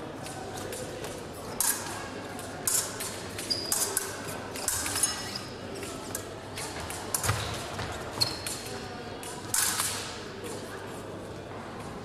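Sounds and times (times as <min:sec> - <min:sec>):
fencing blades clinking: 0:01.5 - 0:06.7, 0:08.4 - 0:10.2.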